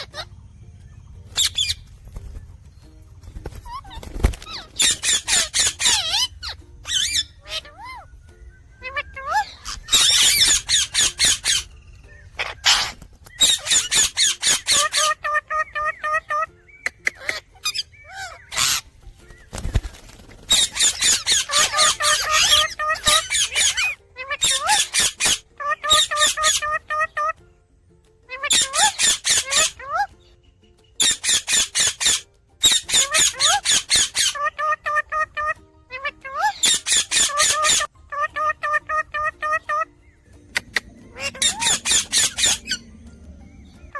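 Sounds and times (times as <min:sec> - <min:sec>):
parakeet screeching: 0:00.0 - 0:00.3, 0:01.3 - 0:01.9, 0:03.6 - 0:08.1, 0:08.8 - 0:18.9, 0:20.5 - 0:27.4, 0:28.3 - 0:30.1, 0:31.0 - 0:40.0, 0:40.6 - 0:43.9
parrot squawking harshly: 0:00.0 - 0:00.3, 0:04.6 - 0:08.1, 0:08.8 - 0:11.7, 0:12.4 - 0:16.5, 0:20.5 - 0:27.4, 0:28.3 - 0:30.1, 0:31.0 - 0:39.9, 0:40.7 - 0:42.9
parrot chirping: 0:00.0 - 0:27.4, 0:28.3 - 0:43.9.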